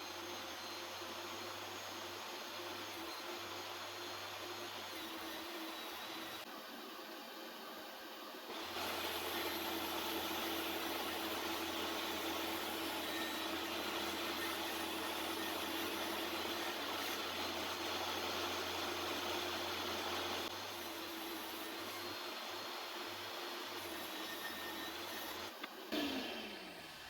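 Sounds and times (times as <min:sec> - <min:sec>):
table saw running: 0:08.5 - 0:27.0.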